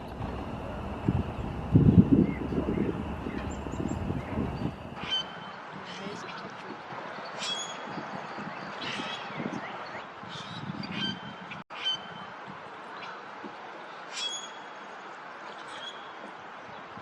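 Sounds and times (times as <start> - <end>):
steady background rumble: 0.0 - 5.1
waterfowl calling: 0.0 - 8.0.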